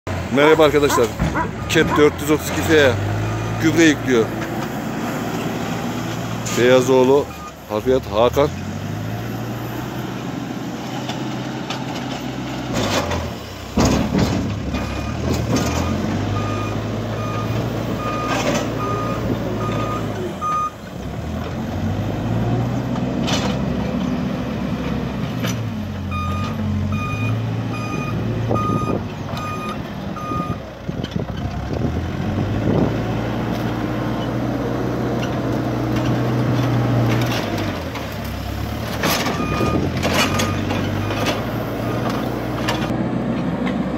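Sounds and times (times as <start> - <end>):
diesel engine working: 0.1 - 43.9
reversing alarm beeping: 3.2 - 3.8, 14.8 - 20.8, 26.1 - 30.6, 39.4 - 41.2.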